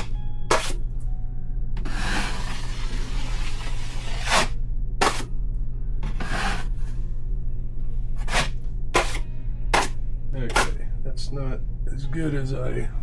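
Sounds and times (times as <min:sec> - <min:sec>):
drywall knife scraping compound: 0:00.0 - 0:00.8, 0:01.8 - 0:05.3, 0:06.0 - 0:06.8, 0:08.2 - 0:09.2, 0:09.8 - 0:10.8
steady low hum: 0:00.0 - 0:13.0.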